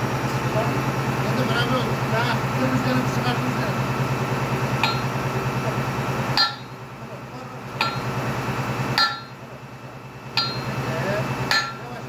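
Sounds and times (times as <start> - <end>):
hydraulic machinery humming: 0.0 - 12.0
sharp metallic clack: 4.8 - 5.1, 6.4 - 6.8, 7.8 - 8.1, 8.9 - 9.4, 10.3 - 10.8, 11.5 - 11.9.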